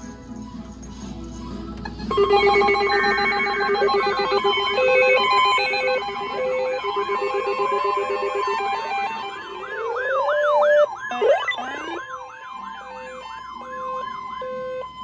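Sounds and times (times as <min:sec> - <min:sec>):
electronic beeping melody: 0:02.1 - 0:15.0
steady held tone: 0:09.8 - 0:12.0.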